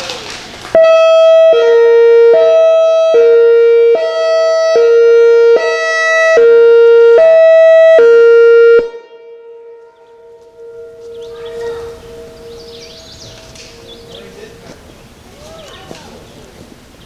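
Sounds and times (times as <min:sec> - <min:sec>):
outdoor warning siren hi-lo tones: 0:00.7 - 0:17.0
faint low siren tone: 0:00.8 - 0:14.3.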